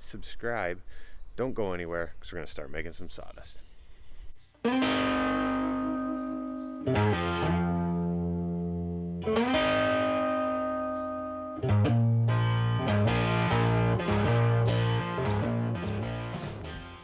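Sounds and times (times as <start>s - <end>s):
distorted electric guitar chords: 4.6s - 17.0s.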